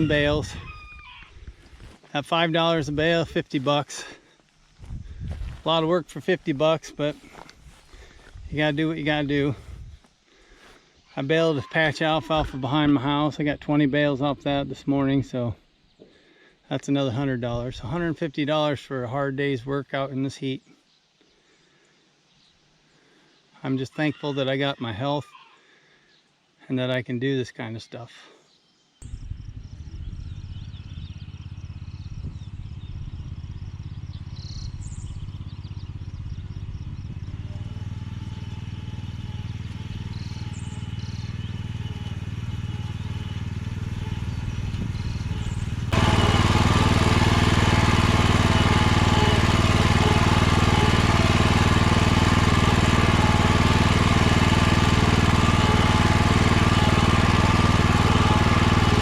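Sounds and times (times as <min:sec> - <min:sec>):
small engine running: 0:00.0 - 0:00.7, 0:02.6 - 0:10.9, 0:29.0 - 0:59.0.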